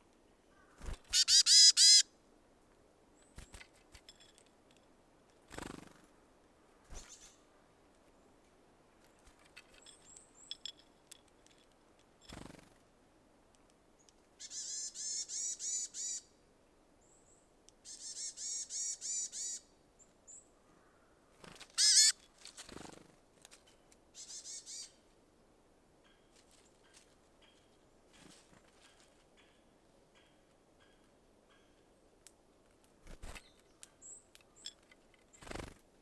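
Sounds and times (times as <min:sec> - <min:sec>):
songbird harsh repeated calls: 0:00.7 - 0:02.1, 0:14.4 - 0:16.3, 0:17.8 - 0:19.6, 0:21.8 - 0:22.1.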